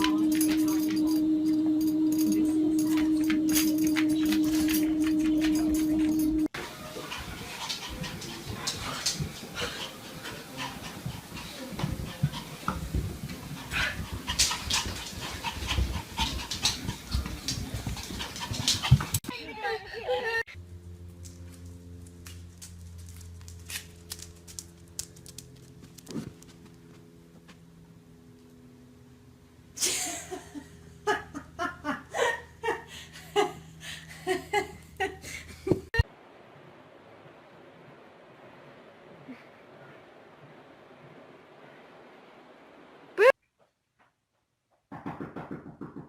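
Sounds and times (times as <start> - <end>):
low steady hum: 0.0 - 6.6
dog panting: 6.7 - 19.2
person laughing hard: 29.8 - 36.0.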